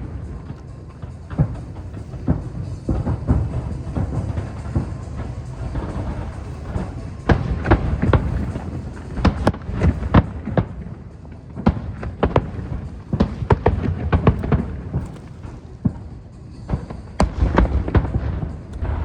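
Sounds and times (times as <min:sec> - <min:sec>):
low rumble: 0:00.0 - 0:10.7, 0:16.8 - 0:19.0
fireworks bangs: 0:00.0 - 0:19.0.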